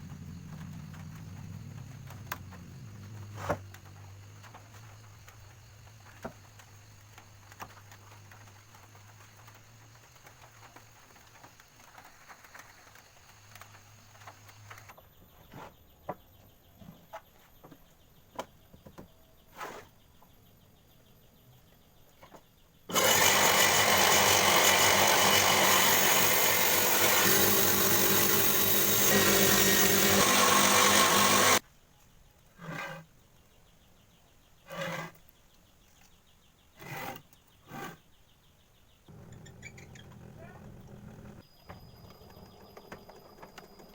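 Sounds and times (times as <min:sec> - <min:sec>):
table saw running: 0:22.9 - 0:31.6.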